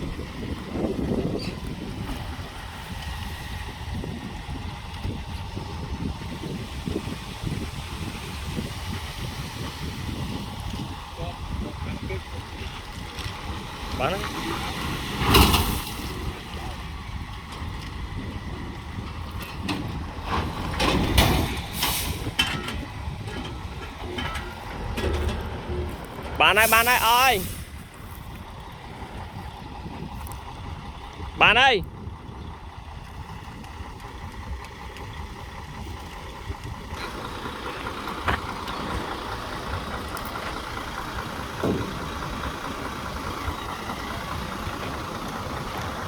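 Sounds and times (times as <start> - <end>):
truck engine rumbling: 0.0 - 46.0
air hiss: 26.5 - 27.9.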